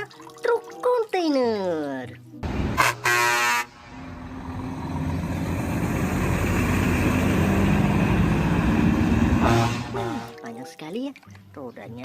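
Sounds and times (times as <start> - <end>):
truck engine rumble: 2.4 - 10.2
horn-like tone: 2.8 - 3.9, 9.4 - 10.3.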